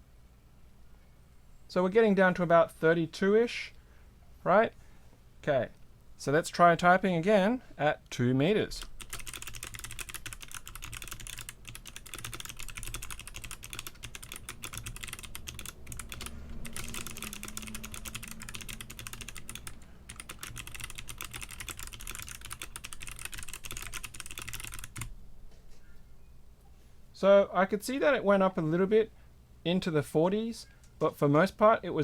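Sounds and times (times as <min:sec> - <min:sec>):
fast typing on mechanical keyboard: 0:08.8 - 0:25.1.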